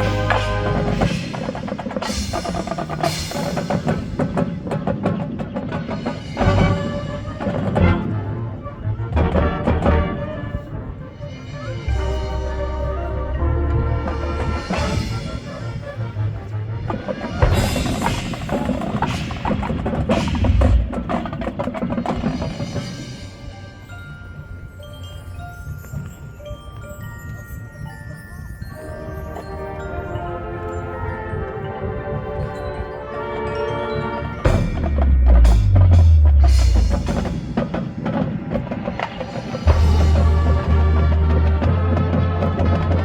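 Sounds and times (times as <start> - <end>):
marching band percussion: 0.0 - 26.8, 28.6 - 43.0
ringing percussion tones: 11.2 - 16.2, 16.8 - 43.0.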